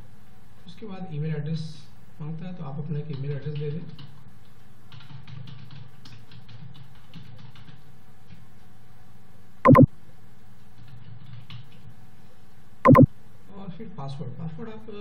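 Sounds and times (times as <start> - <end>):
computer keyboard keystrokes: 4.9 - 8.4.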